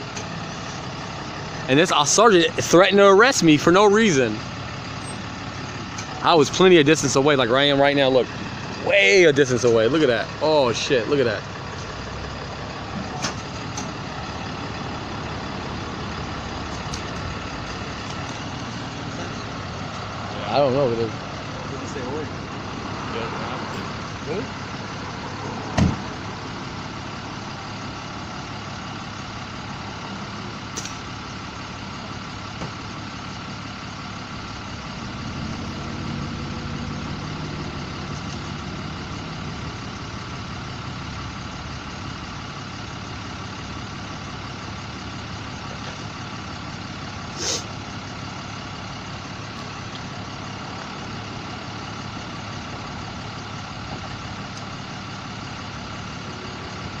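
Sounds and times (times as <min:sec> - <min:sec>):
idling vehicle engines: 0:00.0 - 0:57.0
street traffic: 0:00.0 - 0:57.0
vehicle passing: 0:14.5 - 0:26.8, 0:34.7 - 0:40.4.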